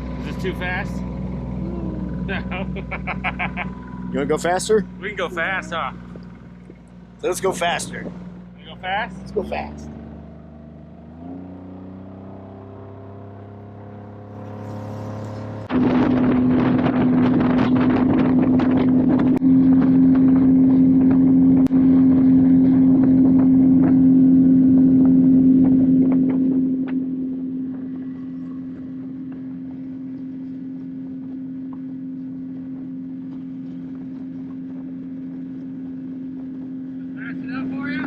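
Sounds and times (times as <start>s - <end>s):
boat motor running: 0.0s - 38.0s
rushing wind: 9.1s - 38.0s.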